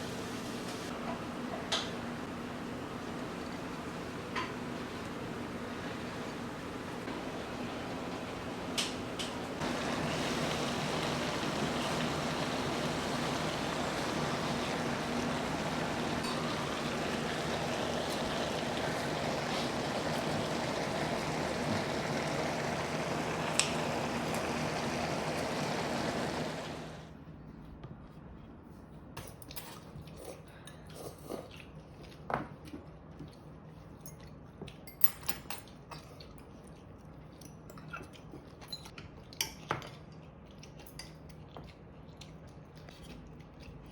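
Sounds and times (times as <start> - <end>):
kitchen hiss: 0.0 - 0.9, 5.2 - 27.1
dishes and utensils clinking: 34.0 - 36.5.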